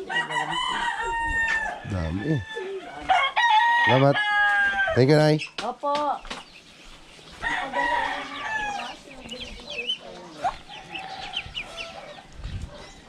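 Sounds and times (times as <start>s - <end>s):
rooster crowing: 0.0s - 5.0s, 7.4s - 9.0s, 10.7s - 13.0s.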